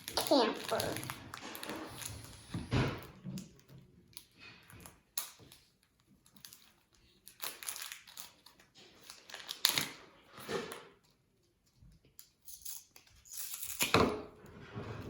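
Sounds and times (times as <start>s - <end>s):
plastic packaging crinkling: 0.0s - 2.4s, 4.4s - 10.4s.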